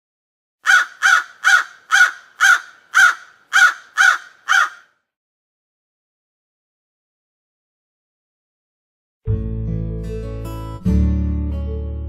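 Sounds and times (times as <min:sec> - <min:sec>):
crow cawing: 0:00.6 - 0:05.0.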